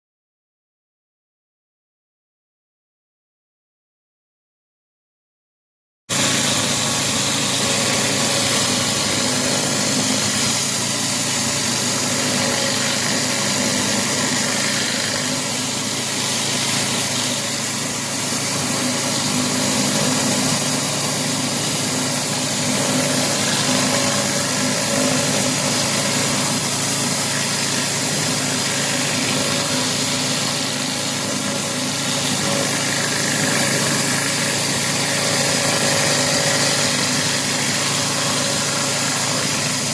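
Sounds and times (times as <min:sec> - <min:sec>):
high-pressure spray hissing: 0:06.1 - 0:39.9
pressure washer engine hum: 0:06.1 - 0:39.9.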